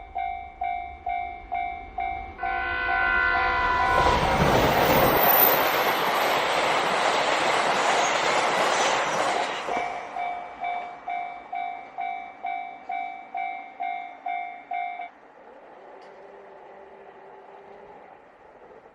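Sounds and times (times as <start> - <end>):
crossing warning bell ringing: 0.0 - 5.9, 9.8 - 15.2
diesel train passing: 0.0 - 18.9.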